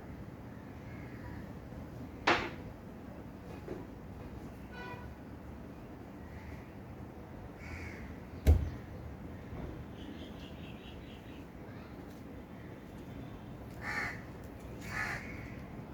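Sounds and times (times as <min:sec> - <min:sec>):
crow cawing: 0:07.6 - 0:08.1, 0:13.8 - 0:15.6
sharp thump: 0:08.4 - 0:08.8.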